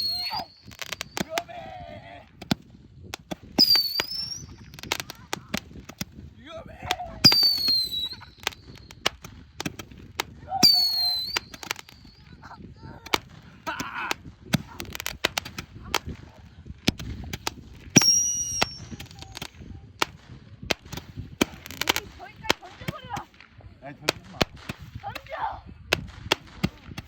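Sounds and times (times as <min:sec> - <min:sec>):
firework whistles: 0:00.0 - 0:01.3, 0:03.6 - 0:05.1, 0:07.2 - 0:09.2, 0:10.6 - 0:12.3, 0:17.9 - 0:19.4
firework pops and crackles: 0:00.0 - 0:27.0.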